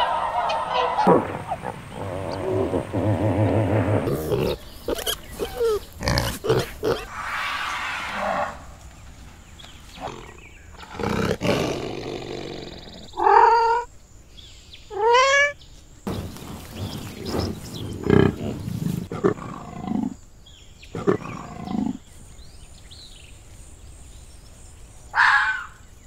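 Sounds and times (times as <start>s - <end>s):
tiger growling and roaring: 0.0s - 8.9s, 9.9s - 13.6s, 16.1s - 20.2s, 20.9s - 22.1s.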